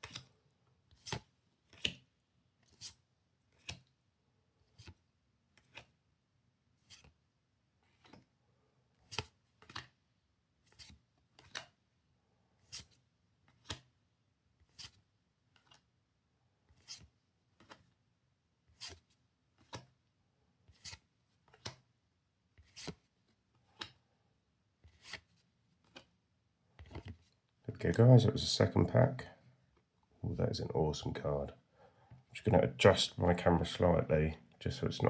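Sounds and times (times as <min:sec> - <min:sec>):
cards flipping: 0:00.0 - 0:00.3, 0:01.0 - 0:02.0, 0:03.5 - 0:03.8, 0:07.9 - 0:08.2, 0:09.1 - 0:09.9, 0:13.6 - 0:13.9, 0:17.6 - 0:17.9, 0:18.8 - 0:19.0, 0:19.6 - 0:19.9, 0:20.7 - 0:21.8, 0:22.6 - 0:24.0, 0:24.9 - 0:26.1.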